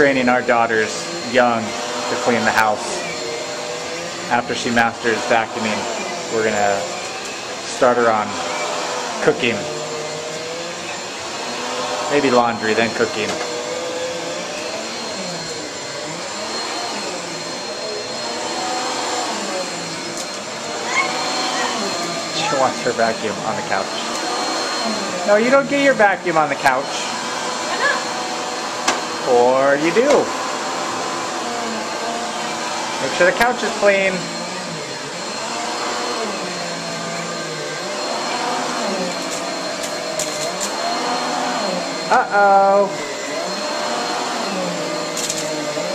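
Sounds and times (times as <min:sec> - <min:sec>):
vacuum cleaner running: 0:00.0 - 0:45.9.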